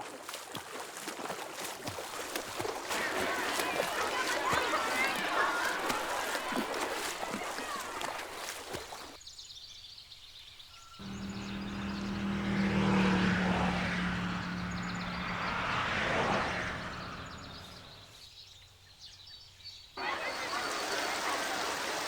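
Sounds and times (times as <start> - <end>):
engine passing by: 2.4 - 8.5, 11.0 - 18.2.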